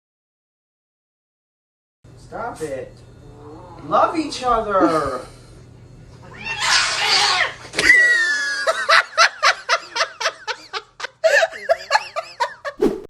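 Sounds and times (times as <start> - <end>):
person laughing hard: 7.8 - 12.8.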